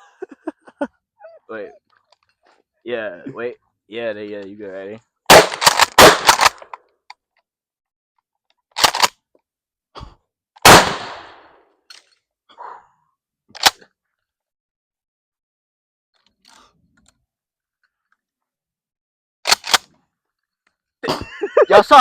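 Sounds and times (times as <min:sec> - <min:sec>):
shotgun firing: 0:05.3 - 0:06.7, 0:10.6 - 0:11.6.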